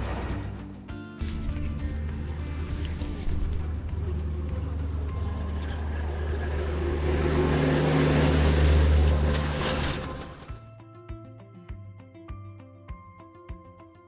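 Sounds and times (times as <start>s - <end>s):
tractor engine running: 0.0s - 10.6s.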